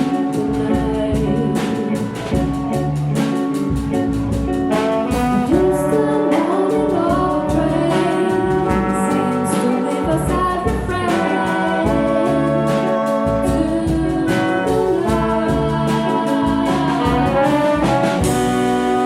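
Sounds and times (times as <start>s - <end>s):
big band playing slow jazz: 0.0s - 19.0s
brass section holding chords: 4.5s - 19.0s.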